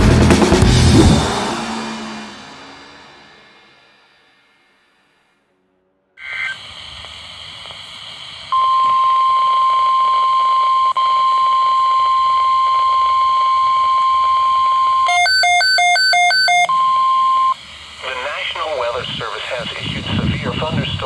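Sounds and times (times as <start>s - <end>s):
steady warning alarm tone: 8.5s - 17.6s
rapid two-pitch beeping: 8.6s - 17.6s
radio static hiss: 17.6s - 21.0s.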